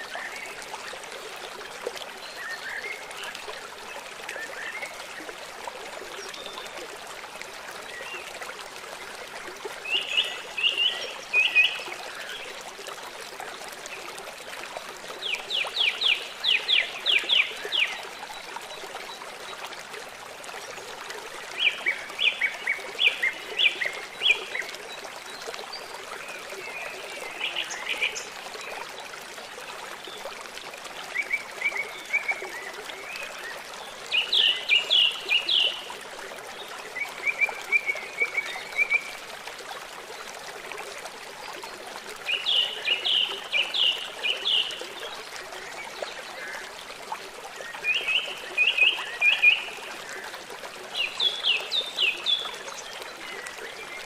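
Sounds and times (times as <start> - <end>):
trickle of running water: 0.0 - 54.0
songbird singing: 33.4 - 35.8.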